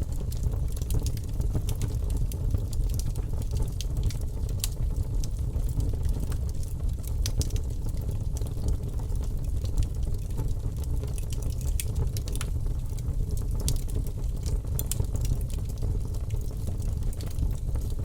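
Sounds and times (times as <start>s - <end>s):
campfire crackling and popping: 0.1s - 18.0s.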